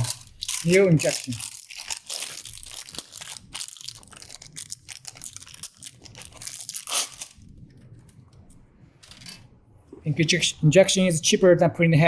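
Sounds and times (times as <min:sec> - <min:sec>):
plastic packaging crinkling: 0:00.0 - 0:08.1.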